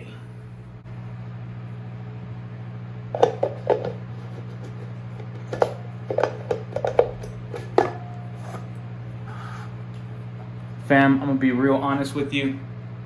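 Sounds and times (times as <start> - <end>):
steady low hum: 0.0 - 13.0
fan parts clicking and knocking: 3.2 - 8.7.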